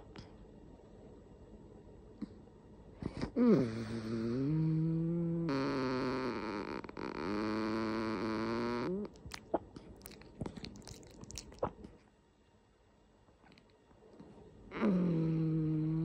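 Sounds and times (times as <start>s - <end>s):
cat snoring: 3.1s - 9.2s, 14.7s - 16.0s.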